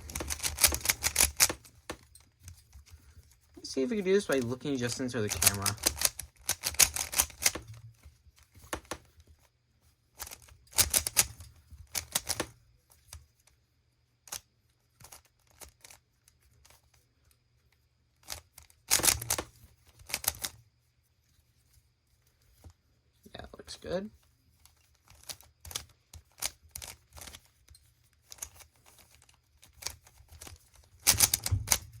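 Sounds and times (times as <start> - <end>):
puzzle cube turning clicks: 0.0 - 2.1, 4.2 - 7.8, 8.6 - 9.1, 10.2 - 13.2, 14.3 - 16.0, 18.2 - 20.6, 24.7 - 27.5, 28.2 - 32.0.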